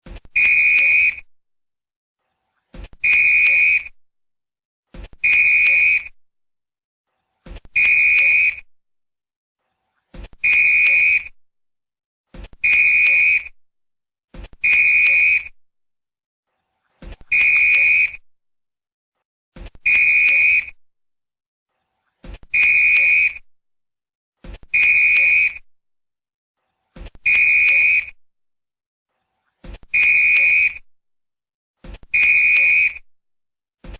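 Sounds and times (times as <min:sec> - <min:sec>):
referee's whistle blasts: 0:00.3 - 0:01.3, 0:03.0 - 0:04.0, 0:05.2 - 0:06.2, 0:07.7 - 0:08.7, 0:10.4 - 0:11.4, 0:12.6 - 0:13.6, 0:14.6 - 0:15.6, 0:17.3 - 0:18.2, 0:19.8 - 0:20.8, 0:22.5 - 0:23.4, 0:24.7 - 0:25.7, 0:27.2 - 0:28.2, 0:29.9 - 0:30.8, 0:32.1 - 0:33.1.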